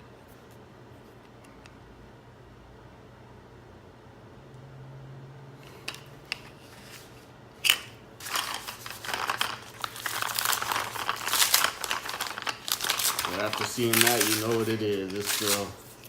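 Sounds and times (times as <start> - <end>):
plastic packaging crinkling: 6.8 - 16.0.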